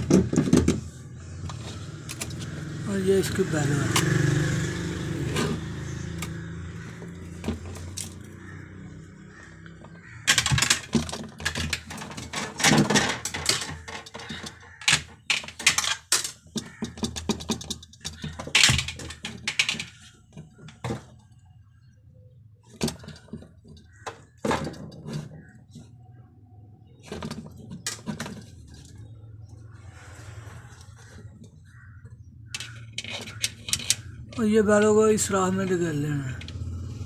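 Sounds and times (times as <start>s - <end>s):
small hard parts clicking: 0.0s - 2.6s, 5.3s - 21.2s, 22.6s - 25.9s, 30.7s - 36.6s.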